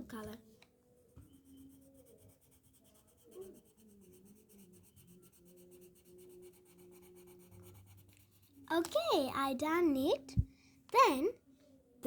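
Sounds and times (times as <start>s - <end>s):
pencil scratching on paper: 1.2s - 9.0s.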